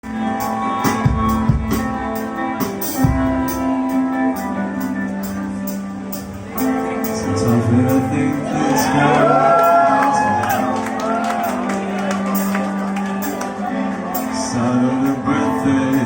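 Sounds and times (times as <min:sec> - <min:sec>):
drums steady beat: 0:00.0 - 0:08.1
bass: 0:00.0 - 0:16.0
sustained guitar notes: 0:00.0 - 0:16.0.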